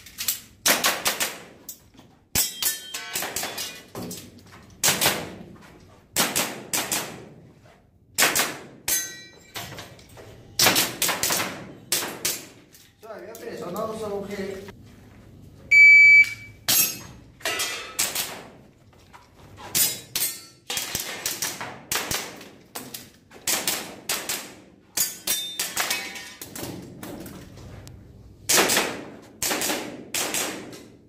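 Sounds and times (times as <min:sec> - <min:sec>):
shot timer beep: 0:15.7 - 0:16.6.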